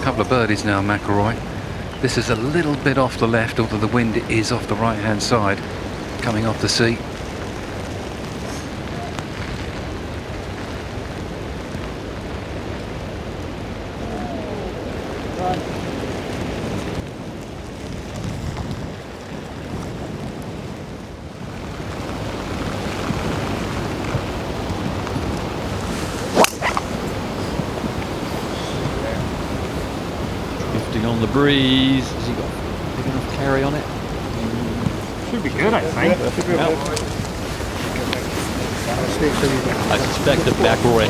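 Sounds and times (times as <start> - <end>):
strong wind on microphone: 0.0 - 41.0
golf club striking ball: 26.0 - 28.2.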